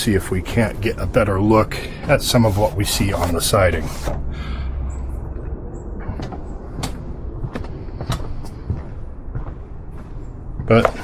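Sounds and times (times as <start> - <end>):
low rumble on microphone: 0.0 - 11.0
footsteps walking: 5.4 - 11.0.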